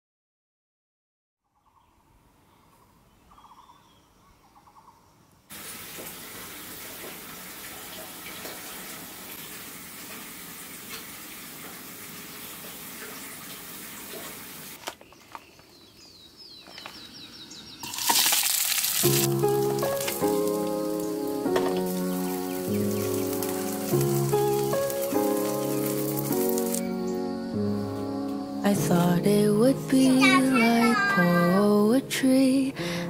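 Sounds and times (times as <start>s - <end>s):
steady hiss: 5.5s - 14.8s, 17.8s - 29.6s
melodic background music: 19.0s - 33.0s.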